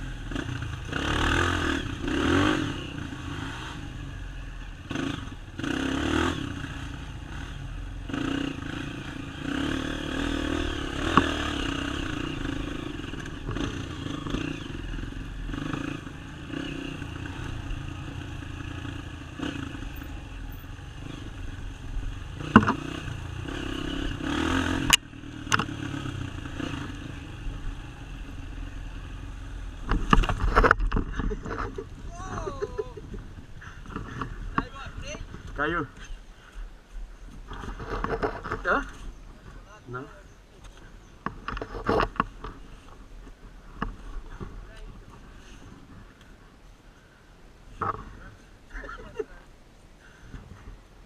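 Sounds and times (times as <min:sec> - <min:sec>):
dirt bike engine revving: 0:00.0 - 0:35.9
bike clacking over rough ground: 0:22.4 - 0:22.9, 0:29.8 - 0:36.2, 0:37.3 - 0:39.6.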